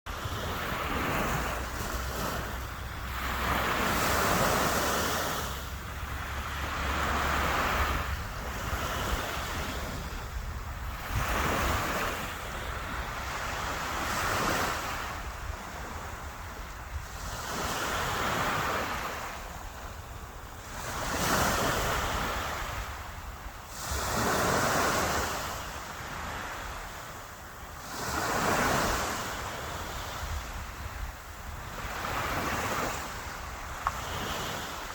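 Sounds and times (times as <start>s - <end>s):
sea waves breaking on shore: 0.1s - 34.9s
wind rumble on microphone: 0.1s - 34.9s.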